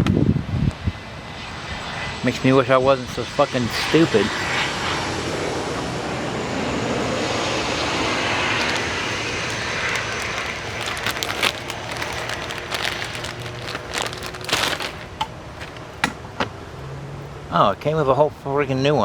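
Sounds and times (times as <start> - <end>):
small parts clicking and rattling: 8.6 - 15.9.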